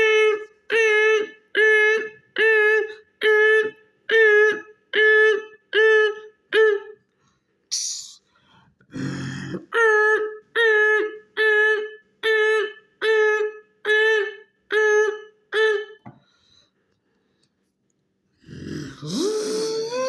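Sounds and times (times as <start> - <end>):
person humming beeps: 18.5 - 20.0.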